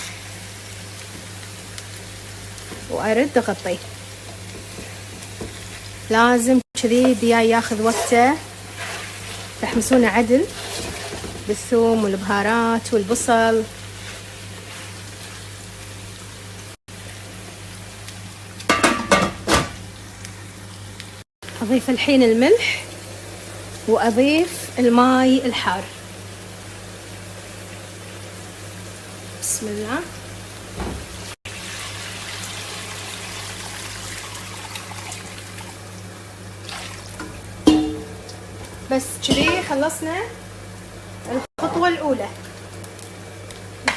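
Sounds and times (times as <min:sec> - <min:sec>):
chicken sizzling in a pot: 0:00.0 - 0:43.9
hot water pouring into a pot: 0:31.5 - 0:35.9, 0:36.6 - 0:37.8
metal clank: 0:37.6 - 0:38.3.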